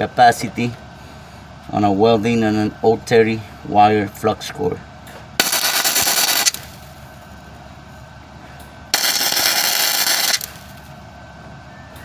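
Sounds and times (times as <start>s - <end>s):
welding arc crackling: 5.4s - 7.1s, 9.0s - 10.9s.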